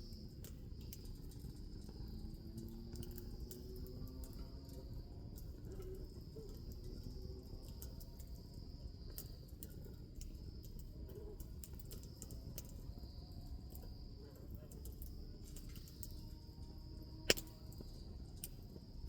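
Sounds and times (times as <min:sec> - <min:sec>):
bonfire crackling and popping: 0:17.2 - 0:18.7.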